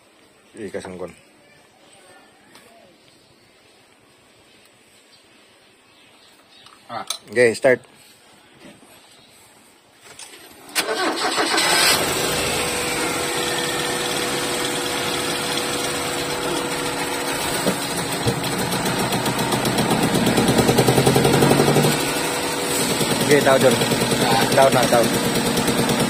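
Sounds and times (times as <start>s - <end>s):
car engine starting and idling: 10.7s - 26.0s.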